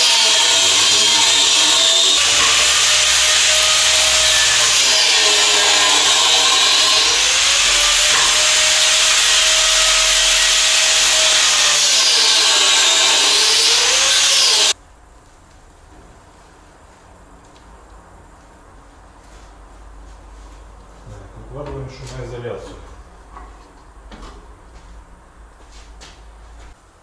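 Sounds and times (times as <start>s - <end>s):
electric power saw cutting wood: 0.0s - 14.8s.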